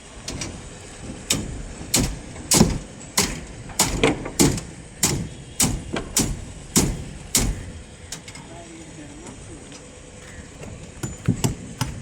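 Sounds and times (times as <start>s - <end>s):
hammer blows: 1.0s - 7.8s.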